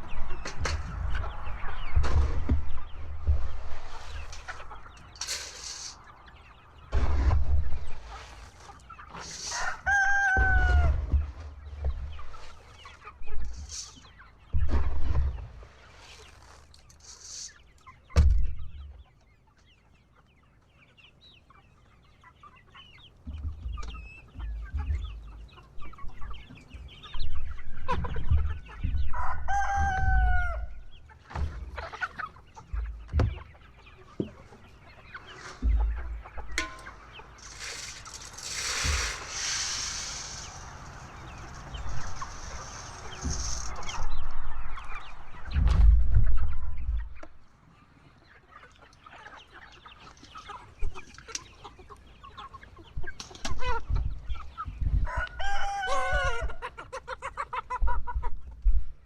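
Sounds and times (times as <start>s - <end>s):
chickens clucking: 0.0s - 59.0s
rustling hiss: 3.8s - 6.1s, 8.4s - 9.8s, 13.4s - 14.1s, 16.0s - 17.7s, 36.8s - 44.1s
rooster crowing: 9.5s - 11.0s, 29.2s - 30.7s, 55.1s - 56.6s
handling thumps and knocks: 32.7s - 33.5s.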